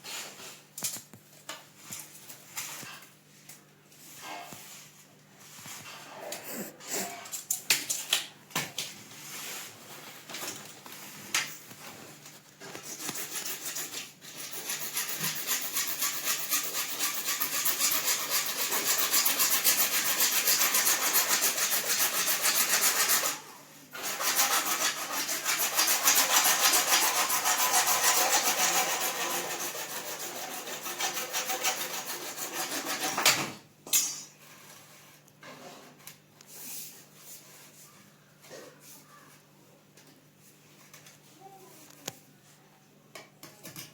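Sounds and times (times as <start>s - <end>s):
hacksaw cutting plastic pipe: 12.7s - 23.4s, 24.0s - 34.2s.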